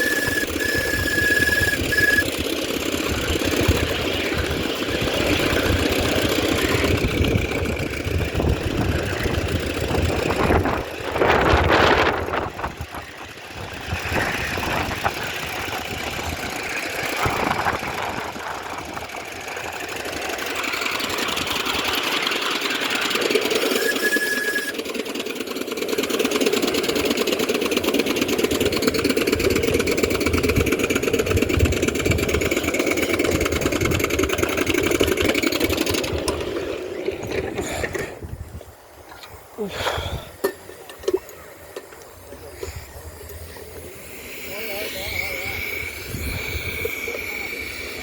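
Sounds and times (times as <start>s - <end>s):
rush of noise: 0.0s - 23.0s, 42.4s - 48.0s
miniature locomotive chuffing: 0.0s - 48.0s.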